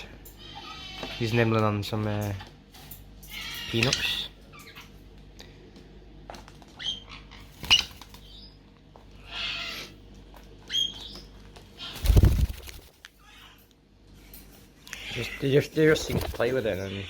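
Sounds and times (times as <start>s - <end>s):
wings flapping: 7.5s - 8.3s, 11.7s - 13.0s, 15.9s - 16.8s.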